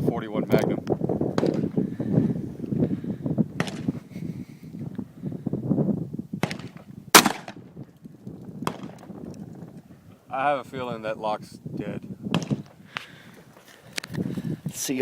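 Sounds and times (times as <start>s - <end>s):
handgun shot: 1.4s - 1.7s, 3.6s - 3.9s, 6.4s - 7.6s, 8.6s - 9.0s, 12.3s - 12.7s.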